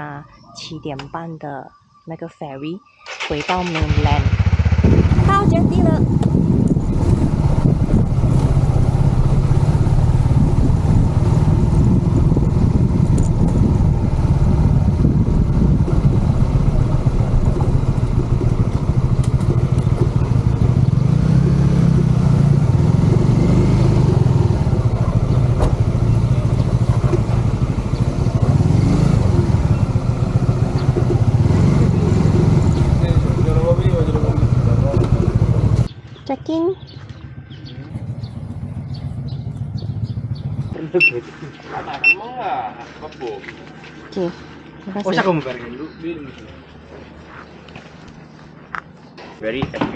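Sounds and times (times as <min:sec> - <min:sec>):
motorcycle engine running: 0:03.1 - 0:41.4.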